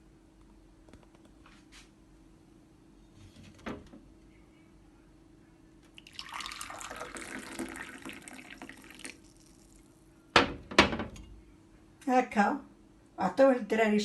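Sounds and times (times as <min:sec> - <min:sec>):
liquid poured into cup: 0:06.0 - 0:09.9.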